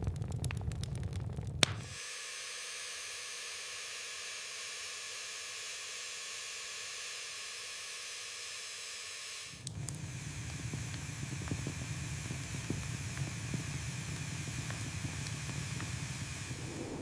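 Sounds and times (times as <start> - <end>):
low rumble: 0.0 - 1.7, 10.7 - 17.0
small clicks: 0.0 - 1.9
steady hiss: 8.9 - 17.0.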